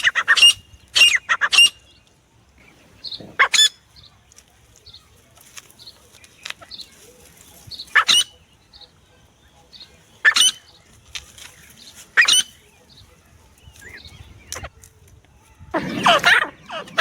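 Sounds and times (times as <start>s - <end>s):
francolin harsh calls: 0.0s - 2.0s, 7.7s - 9.0s.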